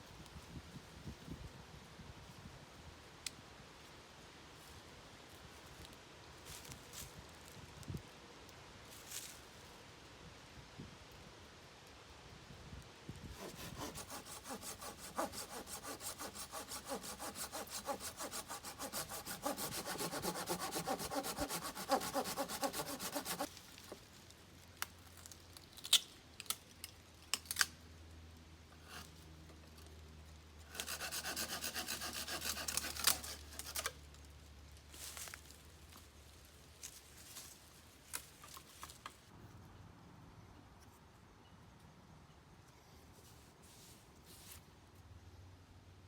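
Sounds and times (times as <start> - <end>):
hand saw cutting wood: 13.3 - 23.5, 30.7 - 34.0.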